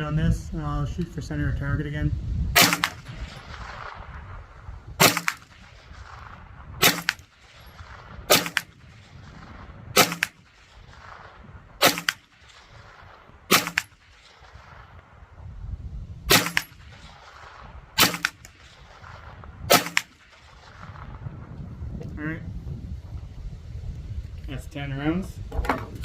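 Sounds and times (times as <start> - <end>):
carbine gunshots: 2.6 - 14.8, 16.3 - 21.1.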